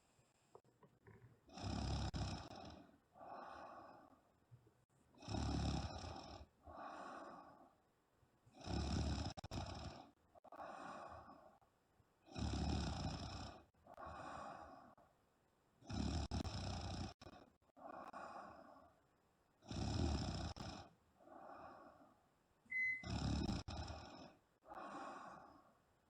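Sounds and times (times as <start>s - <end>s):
woman snoring: 1.5s - 4.0s, 5.2s - 7.4s, 8.6s - 11.2s, 12.3s - 14.8s, 15.8s - 18.6s, 19.7s - 21.8s, 22.9s - 25.5s
soft breath out: 2.6s - 4.3s, 6.2s - 7.8s, 10.5s - 11.6s, 13.9s - 15.1s, 17.4s - 19.0s, 21.2s - 25.8s.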